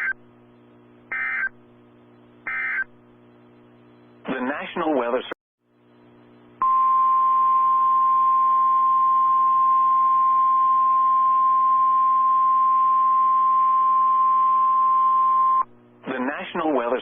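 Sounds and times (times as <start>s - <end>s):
faint radio hiss and hum: 0.0s - 6.6s, 10.2s - 17.0s.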